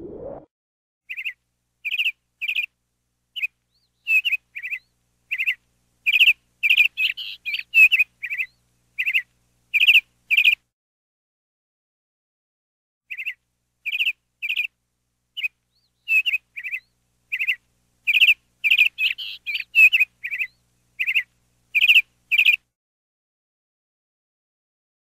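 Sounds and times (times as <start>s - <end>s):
meadowlark chirping: 1.1s - 2.7s, 3.4s - 10.6s, 13.1s - 14.7s, 15.4s - 22.6s.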